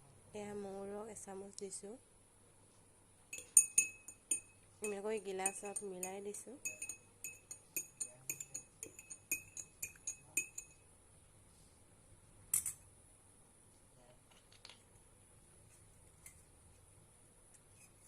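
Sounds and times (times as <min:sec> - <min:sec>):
spoon clinking against glass: 0:03.3 - 0:10.8.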